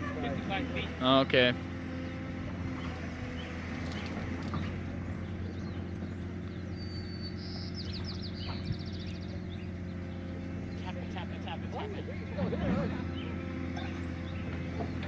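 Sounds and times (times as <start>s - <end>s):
heavy engine humming: 0.0s - 15.0s
small bird singing: 2.8s - 11.7s, 13.0s - 15.0s.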